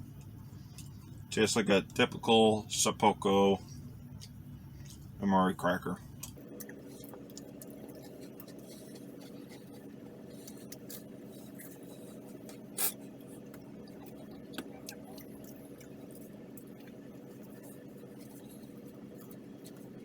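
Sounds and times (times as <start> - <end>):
steady low hum: 0.0 - 20.0
faint scratching: 6.7 - 20.0.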